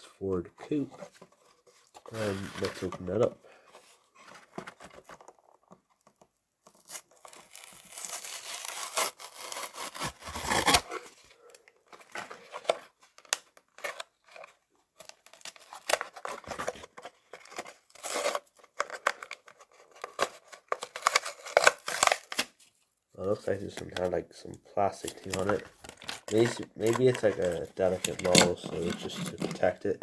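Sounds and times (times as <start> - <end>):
cardboard packaging tearing: 2.1 - 3.2, 6.7 - 11.2, 12.0 - 22.6, 25.0 - 30.0
packaging crinkling: 25.0 - 30.0.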